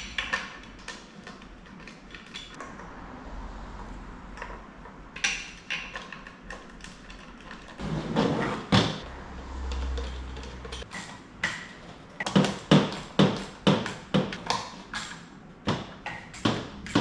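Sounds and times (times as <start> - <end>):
low hum: 9.0 - 10.9.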